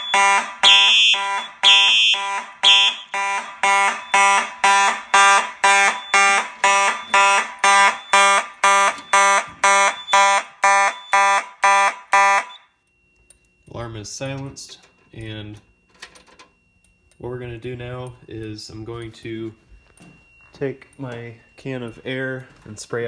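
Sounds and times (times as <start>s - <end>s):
high beep: 0.0s - 12.7s
fire alarm horns buzzing: 0.0s - 23.0s.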